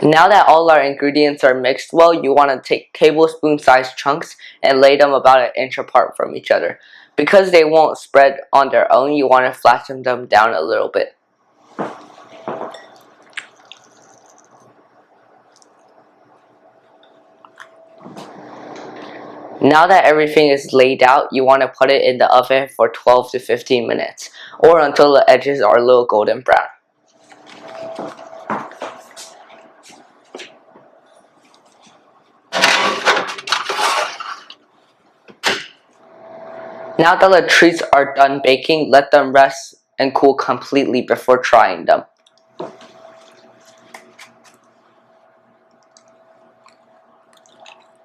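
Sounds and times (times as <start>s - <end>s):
dough squishing by hand: 11.7s - 16.6s
pans and dishes rattling: 32.6s - 34.6s.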